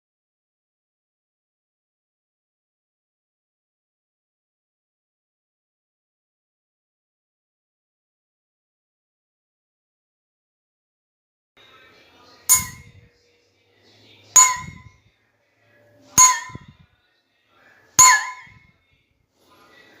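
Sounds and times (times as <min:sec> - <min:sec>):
cutlery striking water bowl: 0:12.5 - 0:13.0, 0:14.4 - 0:14.9, 0:16.2 - 0:16.7, 0:18.0 - 0:18.6.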